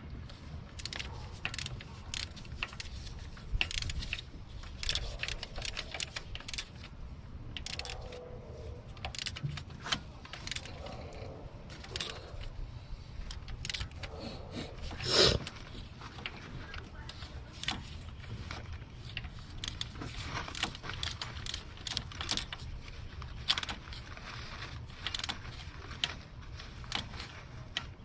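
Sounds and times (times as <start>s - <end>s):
torque wrench ratcheting clicks: 0.8s - 6.9s, 7.6s - 8.1s, 8.9s - 9.7s, 10.3s - 10.9s, 11.8s - 12.5s, 13.2s - 14.2s, 19.0s - 22.7s.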